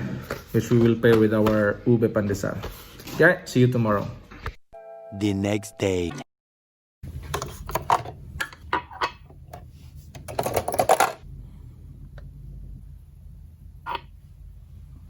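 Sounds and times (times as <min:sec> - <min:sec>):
hard objects clicking and clattering: 0:10.2 - 0:11.2
steady low hum: 0:11.2 - 0:15.0.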